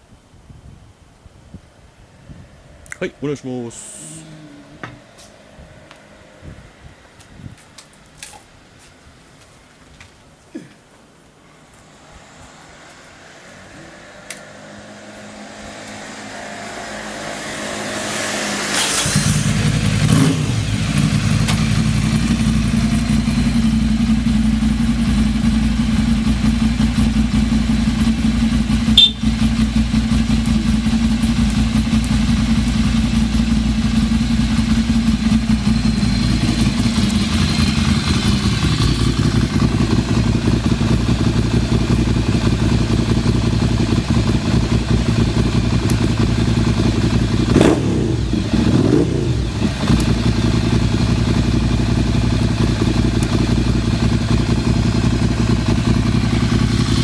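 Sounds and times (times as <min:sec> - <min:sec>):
motorcycle engine starting and idling: 0:11.6 - 0:57.0.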